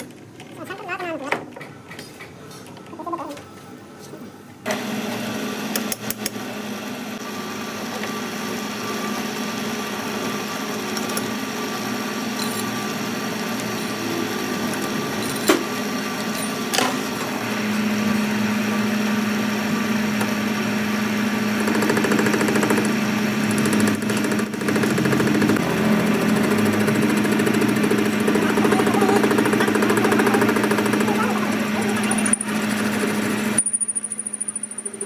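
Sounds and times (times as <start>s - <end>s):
machine motor humming: 6.4s - 34.0s.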